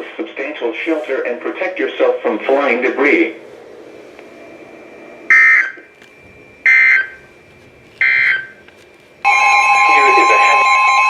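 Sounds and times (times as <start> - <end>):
loud steady alert tone: 1.7 - 7.3, 9.2 - 11.0.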